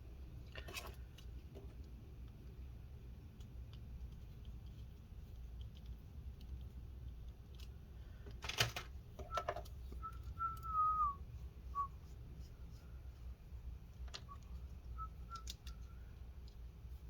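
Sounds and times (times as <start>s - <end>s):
low steady hum: 0.0s - 17.0s
whistled notes: 9.3s - 12.0s, 14.2s - 15.6s.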